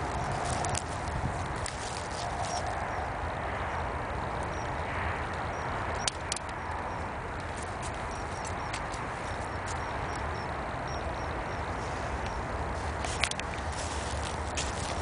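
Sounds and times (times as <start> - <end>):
hooves on frozen snowy ground: 0.0 - 3.6, 7.4 - 10.2, 11.6 - 15.0
steady rushing background noise: 0.0 - 15.0.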